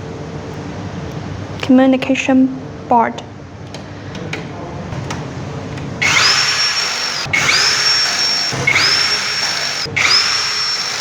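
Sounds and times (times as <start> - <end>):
power drill whining: 6.0 - 11.0.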